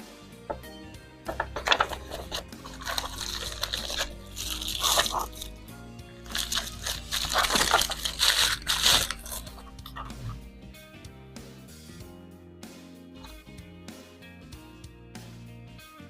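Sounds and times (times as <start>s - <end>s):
background music: 0.0s - 16.0s
plastic packaging crinkling: 1.3s - 5.6s, 6.2s - 10.4s.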